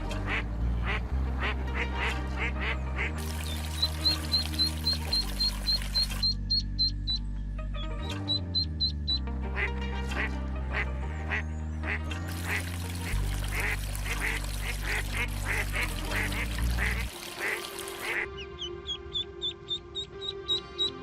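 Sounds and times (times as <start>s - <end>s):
ducks quacking: 0.0s - 6.9s, 8.1s - 18.4s
background music: 0.0s - 21.0s
ducklings peeping: 3.4s - 7.2s, 8.0s - 9.3s, 13.6s - 21.0s.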